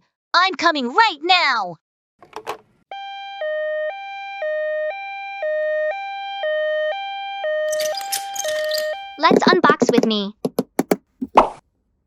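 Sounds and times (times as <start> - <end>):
two-tone ambulance siren: 2.9 - 9.9.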